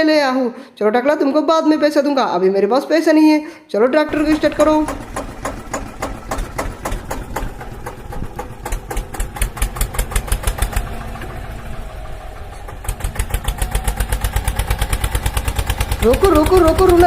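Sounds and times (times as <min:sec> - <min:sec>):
toy tractor chugging: 0:04.1 - 0:17.0.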